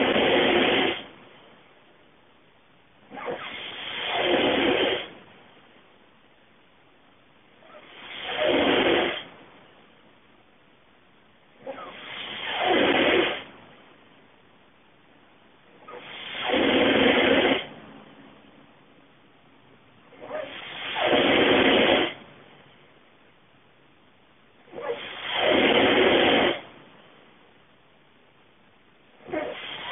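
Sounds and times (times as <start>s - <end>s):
person snoring heavily: 0.0s - 1.1s, 3.1s - 5.1s, 7.6s - 9.3s, 11.6s - 13.5s, 15.9s - 17.7s, 20.2s - 22.2s, 24.8s - 26.6s
quiet breathing: 29.2s - 29.9s.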